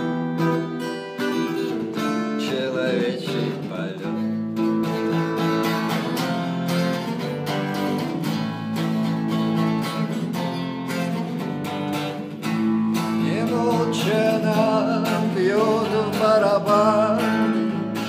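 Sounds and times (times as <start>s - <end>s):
acoustic guitar strumming: 0.0s - 18.0s.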